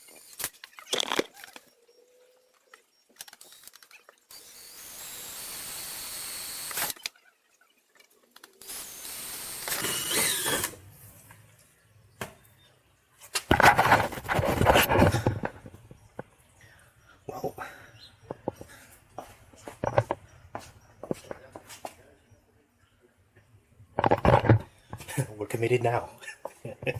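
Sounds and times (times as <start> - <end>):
power drill drilling plastic: 3.2 - 7.1, 8.6 - 10.9.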